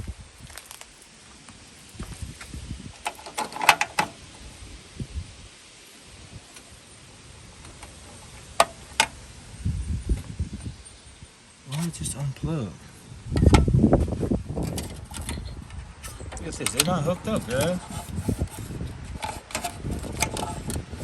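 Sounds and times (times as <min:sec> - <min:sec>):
car parts clicking and rattling: 0:03.0 - 0:04.2, 0:13.3 - 0:13.7, 0:14.4 - 0:21.0.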